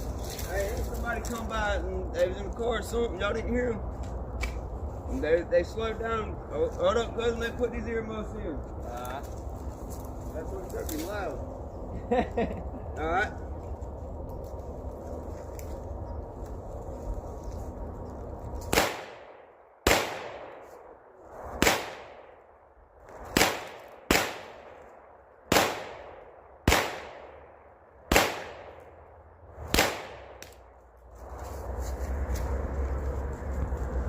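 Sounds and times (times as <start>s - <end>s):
gunshots with echo: 18.7s - 20.7s, 21.6s - 22.3s, 23.4s - 24.7s, 25.5s - 27.5s, 28.1s - 28.8s, 29.7s - 30.4s.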